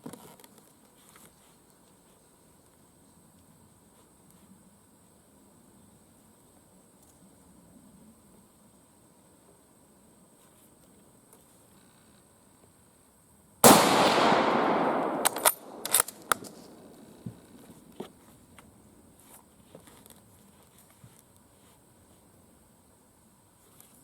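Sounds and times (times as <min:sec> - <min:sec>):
rifle bolt clicks: 0:13.6 - 0:17.0
rifle shot: 0:13.6 - 0:17.2.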